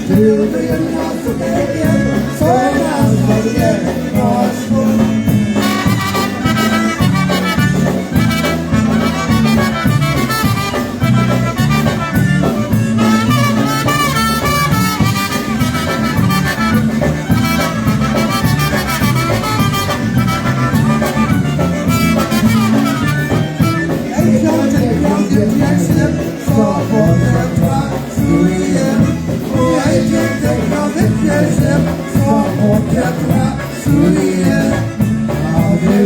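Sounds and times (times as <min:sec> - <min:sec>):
live polka band playing: 0:00.0 - 0:36.0.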